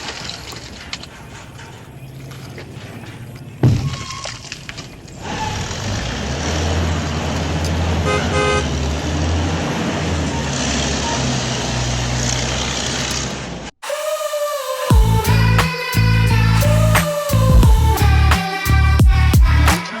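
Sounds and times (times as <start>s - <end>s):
vehicle engine running: 5.2s - 13.7s, 14.9s - 19.7s.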